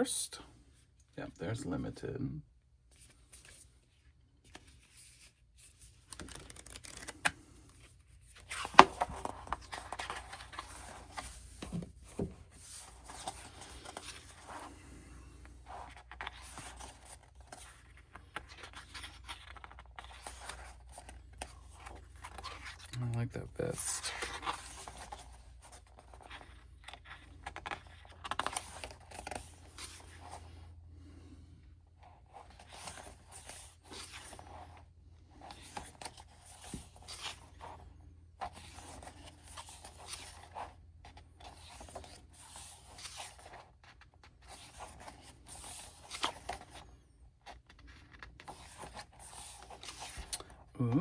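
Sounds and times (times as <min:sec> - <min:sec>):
photo book pages turning: 0:02.9 - 0:31.1, 0:31.9 - 0:51.0
paper rustling and scraping: 0:04.4 - 0:22.9, 0:32.0 - 0:50.7.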